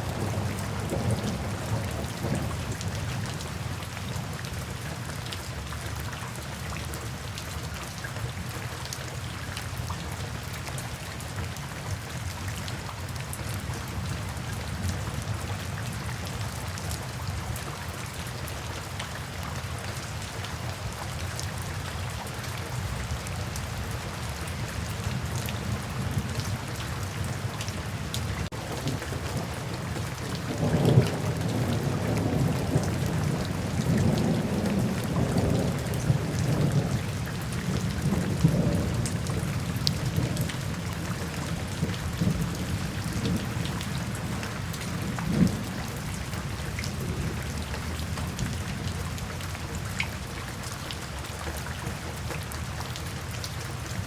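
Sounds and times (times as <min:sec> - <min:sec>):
low rumble of thunder: 0:00.0 - 0:04.4, 0:23.0 - 0:50.3
steady rain falling: 0:00.0 - 0:54.0.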